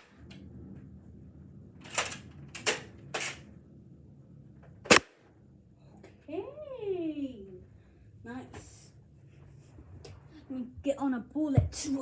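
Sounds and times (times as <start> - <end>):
foam dart blaster clacks: 4.9 - 5.2.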